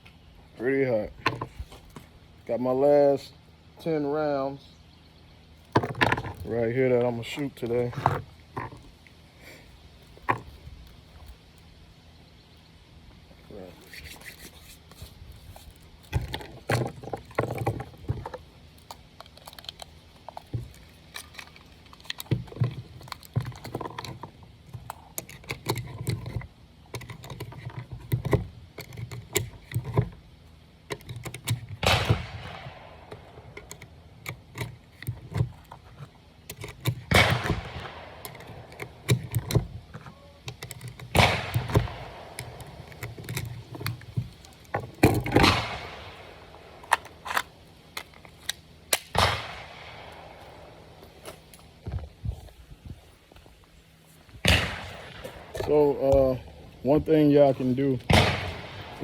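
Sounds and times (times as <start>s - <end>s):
small metallic clicks and knocks: 15.6s - 52.1s
gunshots with echo: 58.1s - 59.0s.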